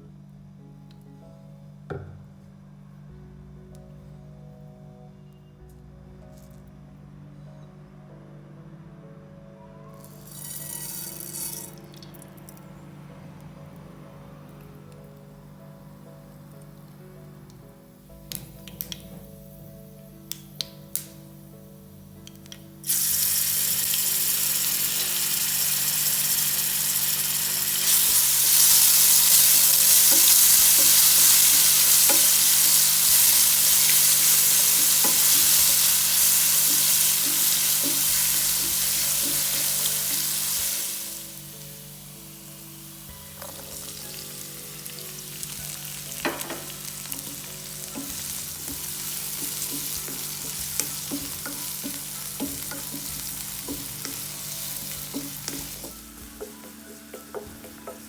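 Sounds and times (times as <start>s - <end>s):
food sizzling in hot oil: 10.2s - 11.7s, 22.8s - 58.0s.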